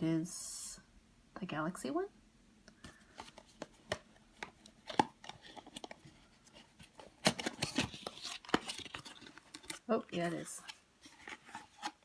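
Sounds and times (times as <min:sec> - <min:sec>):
packaging clicks and taps: 0:02.7 - 0:06.1
packaging crinkling: 0:06.8 - 0:09.8.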